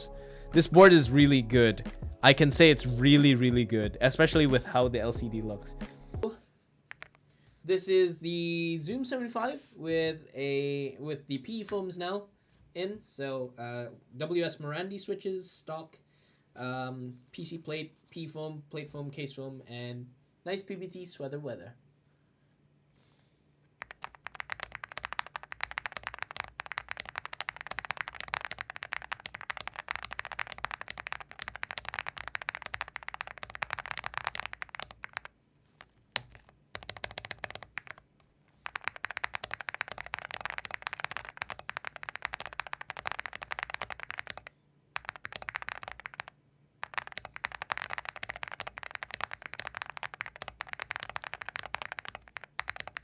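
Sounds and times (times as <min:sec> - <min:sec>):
fast typing on mechanical keyboard: 0:06.9 - 0:07.2, 0:23.8 - 0:38.0, 0:38.6 - 0:53.0.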